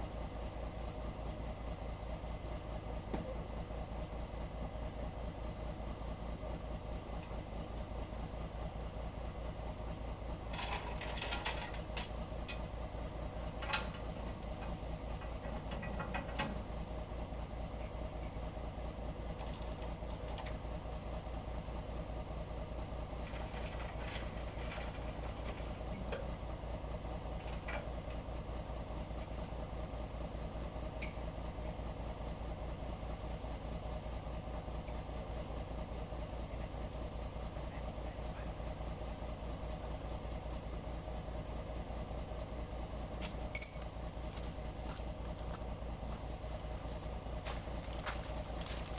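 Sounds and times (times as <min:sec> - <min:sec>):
diesel truck engine idling: 0:00.0 - 0:48.9.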